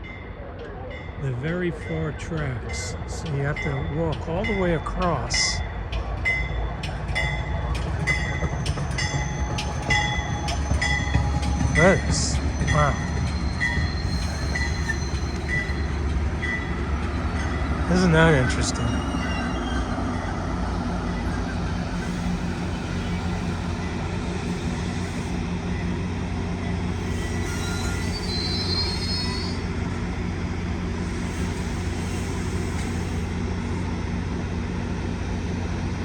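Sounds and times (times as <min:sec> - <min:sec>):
train locomotive humming: 0:00.0 - 0:36.0
faint high squeal: 0:09.2 - 0:16.0, 0:27.0 - 0:29.6.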